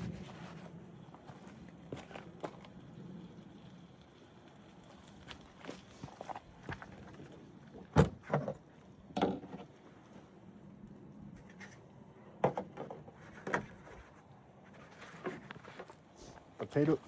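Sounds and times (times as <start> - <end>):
objects knocking and clunking: 6.1 - 9.8, 12.4 - 14.0.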